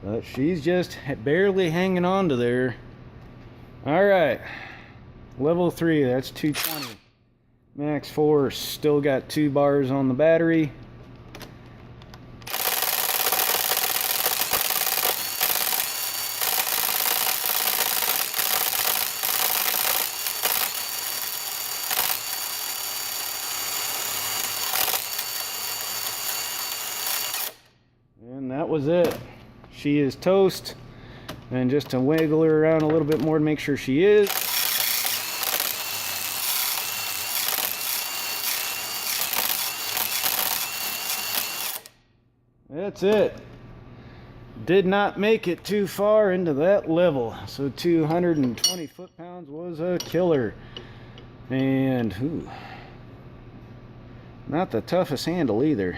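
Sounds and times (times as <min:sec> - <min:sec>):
power tool running with whine: 0:06.6 - 0:07.0, 0:12.5 - 0:27.7, 0:34.2 - 0:41.9
ratchet clicking and grinding: 0:12.4 - 0:27.7, 0:34.2 - 0:42.0
impact wrench hammering: 0:12.5 - 0:27.7, 0:34.2 - 0:41.9, 0:48.4 - 0:49.0.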